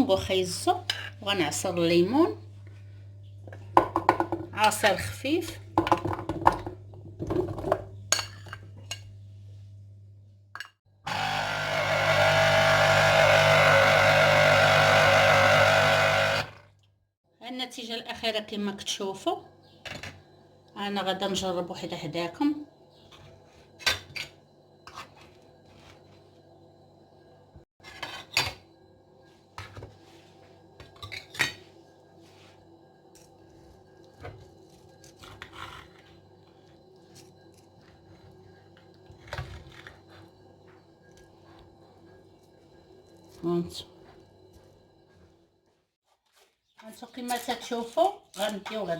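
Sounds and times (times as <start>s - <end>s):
electric blender running: 11.0s - 16.6s.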